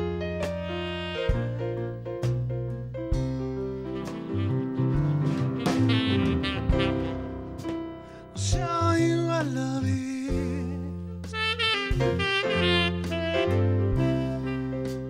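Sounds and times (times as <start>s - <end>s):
saxophone melody: 0.0s - 2.2s, 3.5s - 8.2s, 11.2s - 15.0s
jazz band playing: 0.0s - 15.0s.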